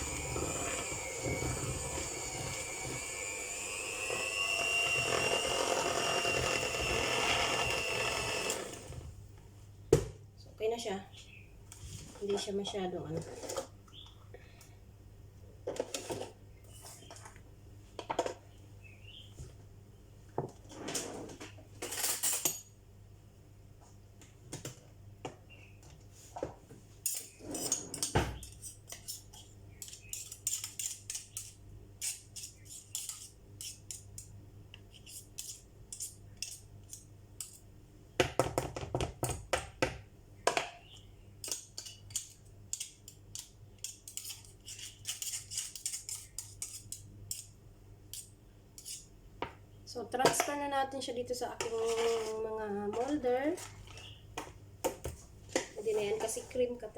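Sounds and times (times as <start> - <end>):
utensil scraping mixing bowl: 0.0 - 9.1, 51.6 - 54.0.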